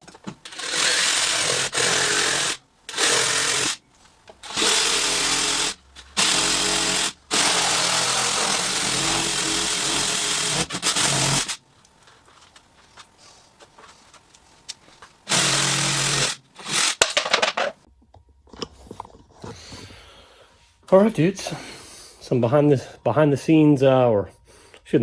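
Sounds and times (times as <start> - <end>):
power tool cutting pipe: 0.4 - 3.8, 4.4 - 11.6, 15.3 - 17.1.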